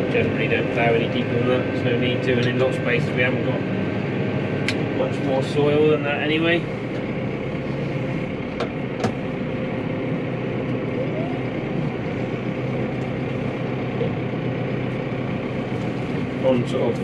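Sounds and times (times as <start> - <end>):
tractor engine under load: 3.6 - 17.0.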